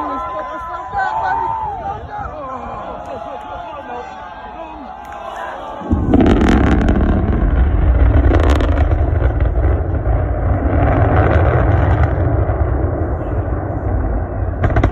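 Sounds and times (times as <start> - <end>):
deep rocket rumble: 5.6 - 14.9
sharp crackles: 5.8 - 14.9.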